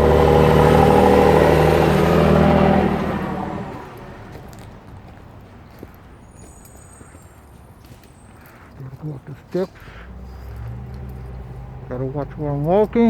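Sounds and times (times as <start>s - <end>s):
vehicle engine running loud: 0.0s - 4.7s, 10.1s - 13.0s.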